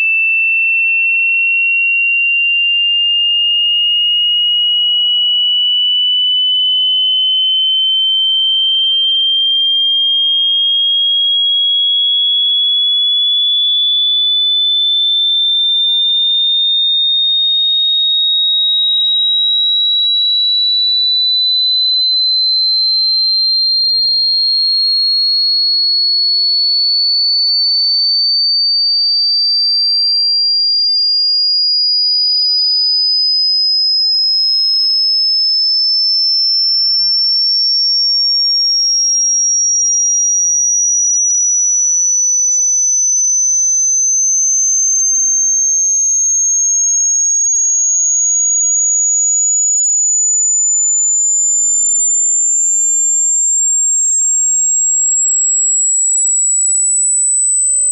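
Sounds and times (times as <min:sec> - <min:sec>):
rising pure test tone: 0:41.3 - 0:45.4.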